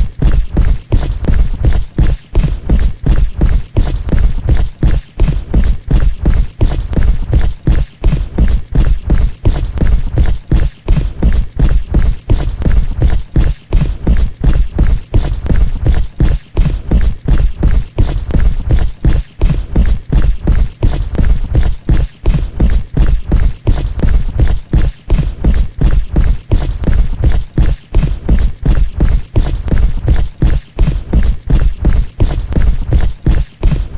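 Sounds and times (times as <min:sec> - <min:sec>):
heavy footsteps thudding: 0:00.0 - 0:33.9.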